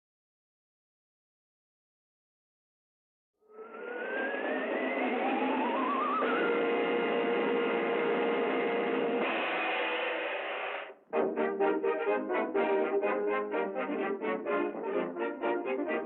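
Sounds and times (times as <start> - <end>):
orchestral cartoon music: 3.6 - 9.3, 11.0 - 16.0.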